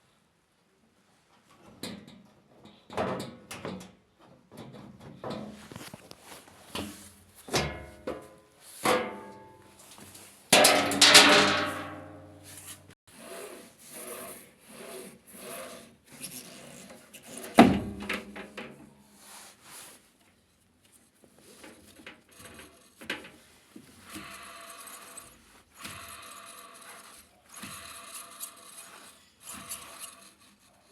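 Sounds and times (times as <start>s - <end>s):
parts knocking and clattering: 10.5s - 12.7s
loud ringing metal clang: 10.6s - 12.4s.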